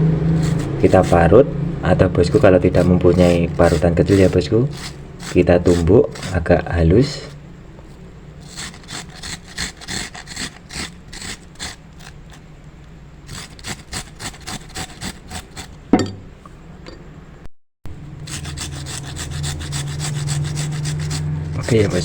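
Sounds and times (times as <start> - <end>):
low hum: 0.0 - 5.2
grating on a hand grater: 0.3 - 1.4, 2.2 - 7.4, 8.4 - 12.4, 13.2 - 15.8, 18.2 - 22.0.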